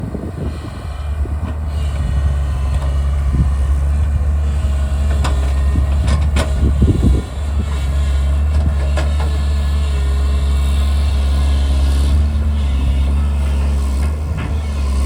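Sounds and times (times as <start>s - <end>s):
diesel engine running under load: 0.0s - 15.0s.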